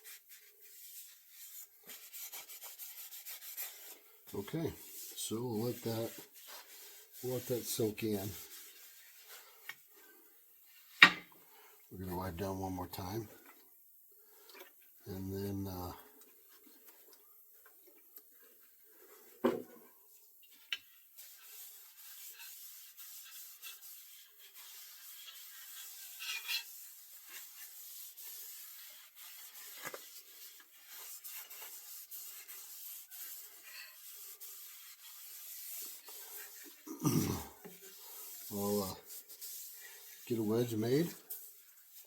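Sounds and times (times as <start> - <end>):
rag rubbing wooden handle: 0.0 - 9.7, 20.4 - 42.0.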